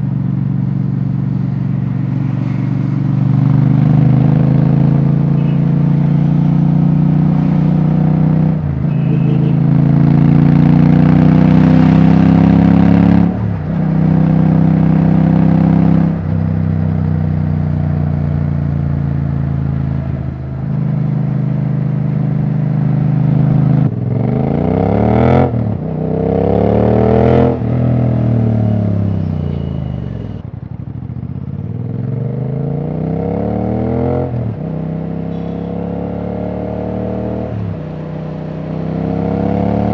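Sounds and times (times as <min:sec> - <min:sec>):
motorcycle engine revving: 0:01.4 - 0:16.2, 0:31.2 - 0:39.9.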